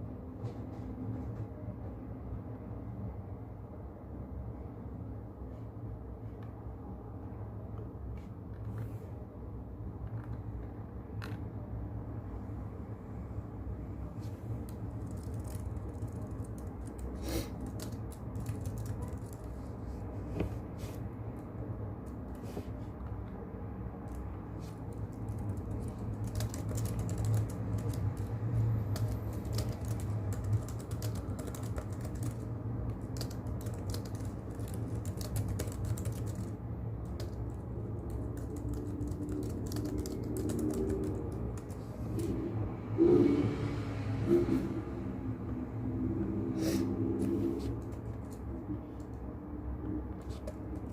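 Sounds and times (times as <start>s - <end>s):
keyboard typing clicks: 14.7s - 19.6s, 25.1s - 28.3s, 28.9s - 37.5s, 38.1s - 42.3s.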